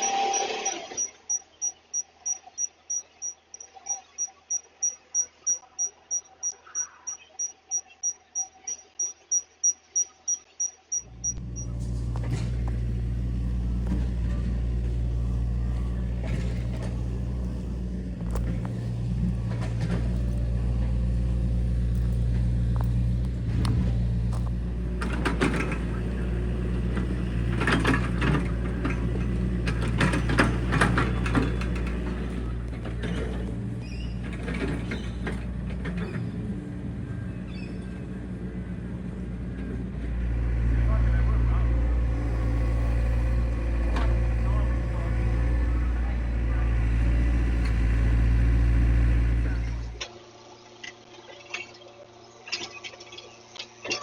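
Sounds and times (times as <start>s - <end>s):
rapid high-pitched electronic beeping: 0.0s - 11.7s
truck diesel engine running: 11.0s - 50.0s
knocks and clatter: 21.9s - 36.4s.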